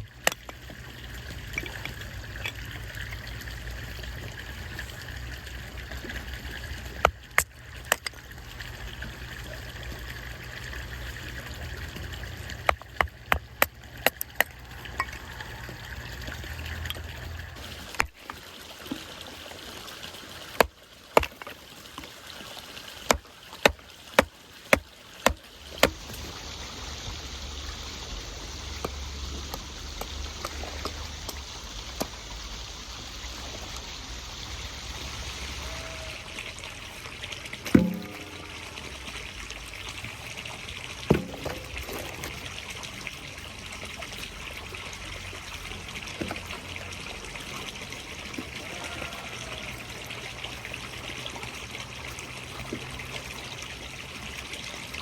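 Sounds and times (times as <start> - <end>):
water trickling: 0.0 - 55.0
sharp knocks: 37.7 - 38.7, 41.1 - 42.4.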